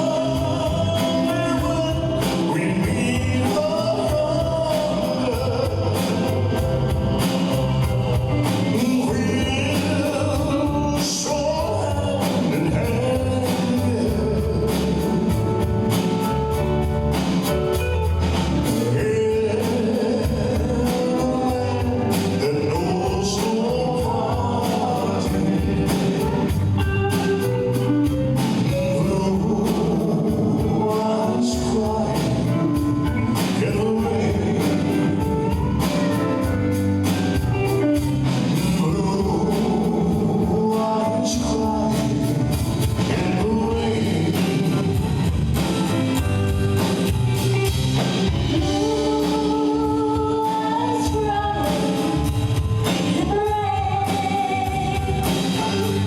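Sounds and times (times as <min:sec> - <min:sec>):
man singing: 0:00.0 - 0:16.9, 0:17.7 - 0:56.0
live band with drums and guitar: 0:00.0 - 0:56.0.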